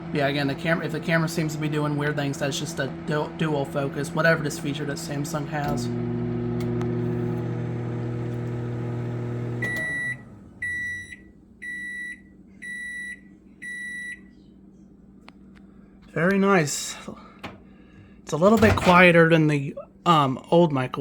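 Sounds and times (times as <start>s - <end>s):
microwave oven humming: 0.0s - 15.9s
microwave beeps: 5.6s - 14.4s.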